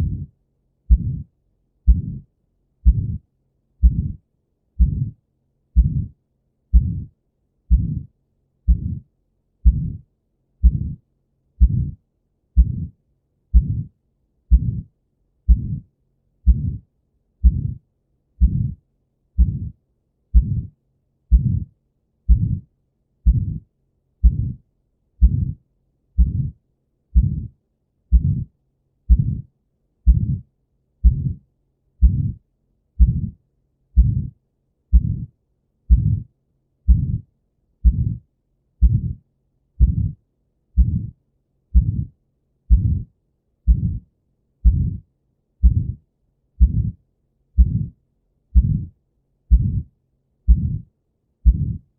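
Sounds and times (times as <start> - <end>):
heartbeat with murmur: 0.0 - 0.3, 0.9 - 1.3, 1.9 - 4.2, 4.8 - 5.2, 5.8 - 7.1, 7.7 - 8.1, 8.7 - 10.0, 10.6 - 11.0, 11.6 - 12.0, 12.6 - 13.9, 14.5 - 14.9, 15.5 - 17.8, 18.4 - 18.8, 19.4 - 21.7, 22.3 - 24.6, 25.2 - 25.6, 26.2 - 26.6, 27.2 - 28.5, 29.1 - 29.5, 30.1 - 31.4, 32.0 - 32.4, 33.0 - 33.4, 34.0 - 36.3, 36.9 - 38.2, 38.8 - 39.2, 39.8 - 40.2, 40.8 - 43.1, 43.7 - 45.0, 45.6 - 46.0, 46.6 - 47.0, 47.6 - 49.9, 50.5 - 51.9.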